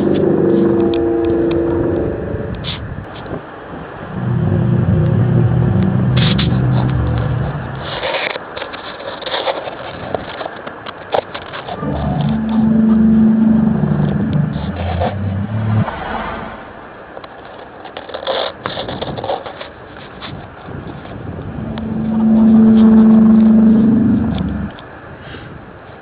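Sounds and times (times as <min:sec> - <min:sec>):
low groaning drone: 0:00.0 - 0:03.1, 0:03.9 - 0:08.0, 0:11.7 - 0:16.9, 0:21.4 - 0:24.9
scattered crackles: 0:05.0 - 0:16.0.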